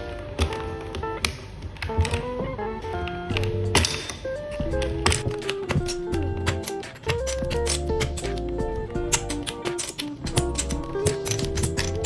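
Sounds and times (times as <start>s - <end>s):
background music with held notes: 0.0s - 12.0s
sharp clicks and taps: 3.0s - 12.0s.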